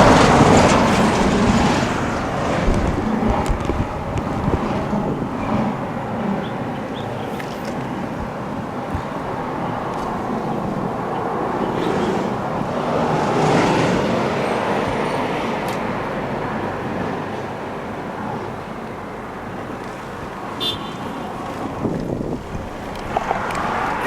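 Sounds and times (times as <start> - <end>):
vehicle passing by: 0.0 - 17.3, 21.1 - 24.0
road traffic noise: 0.0 - 24.0.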